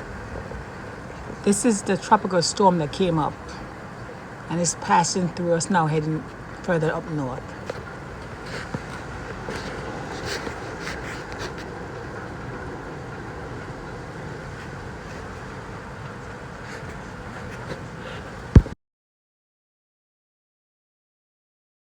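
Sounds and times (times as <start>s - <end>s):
strong wind blowing: 0.0s - 18.8s
sharp thump: 18.6s - 18.8s.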